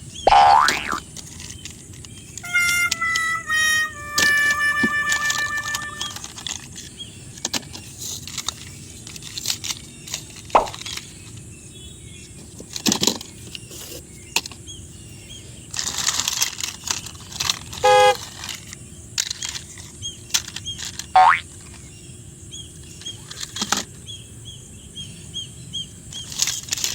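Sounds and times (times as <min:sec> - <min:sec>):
plastic toys clicking and rattling: 0:00.6 - 0:11.4, 0:12.5 - 0:14.6, 0:15.7 - 0:21.2, 0:23.0 - 0:23.9, 0:26.1 - 0:26.9
electronic toy horn: 0:02.4 - 0:06.4, 0:17.8 - 0:18.2, 0:21.2 - 0:21.4.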